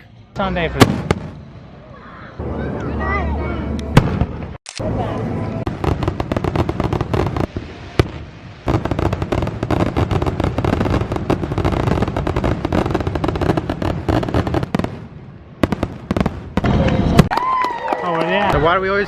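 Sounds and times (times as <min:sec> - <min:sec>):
firework bang: 0:00.8 - 0:01.5, 0:03.9 - 0:04.6
fireworks crackling pops: 0:03.8 - 0:04.9, 0:05.6 - 0:17.8.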